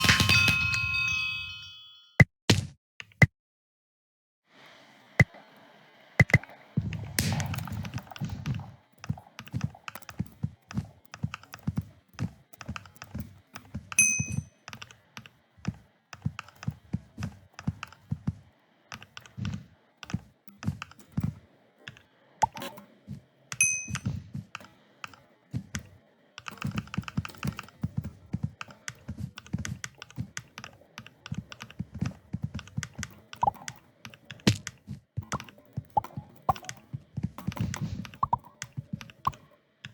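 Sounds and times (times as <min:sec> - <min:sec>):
keyboard typing: 0:06.2 - 0:22.8, 0:23.5 - 0:39.9.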